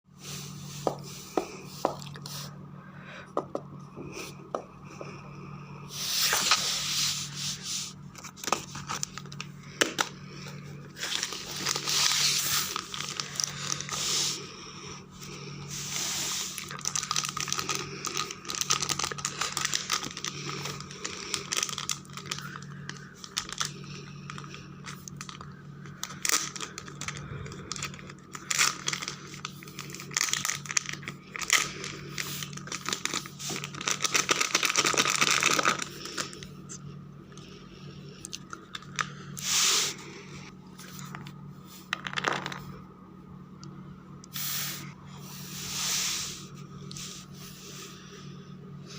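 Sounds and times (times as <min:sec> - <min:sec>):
steady low hum: 0:00.1 - 0:48.9
packaging tearing and crinkling: 0:11.0 - 0:14.2, 0:15.9 - 0:36.4.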